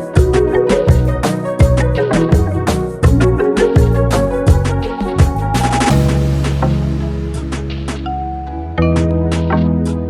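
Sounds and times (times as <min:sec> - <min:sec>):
background music with steady beat: 0:00.0 - 0:10.0.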